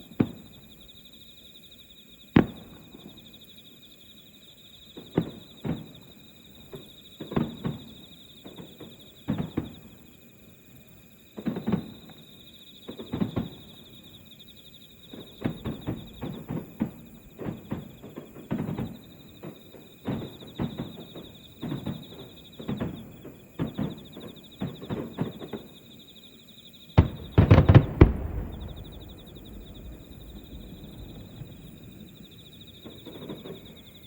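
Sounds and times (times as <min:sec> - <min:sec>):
distant fireworks booming: 0:00.0 - 0:00.7, 0:02.4 - 0:03.2, 0:05.0 - 0:06.1, 0:06.7 - 0:10.0, 0:15.1 - 0:25.7, 0:27.0 - 0:34.0
insects chirping: 0:00.0 - 0:34.0.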